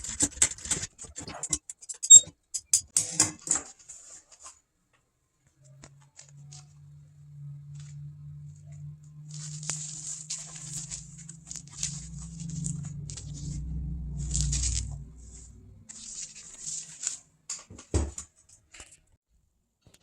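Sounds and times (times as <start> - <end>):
vinyl material rustling: 7.7 - 19.2.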